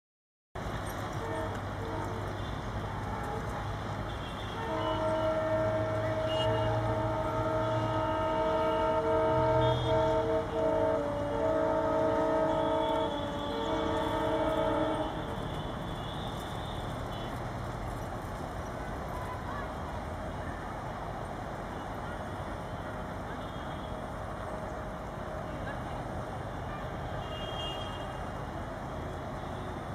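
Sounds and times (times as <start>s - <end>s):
diesel locomotive chugging: 0.6s - 27.2s
locomotive horn honks: 1.1s - 17.4s, 26.6s - 28.5s.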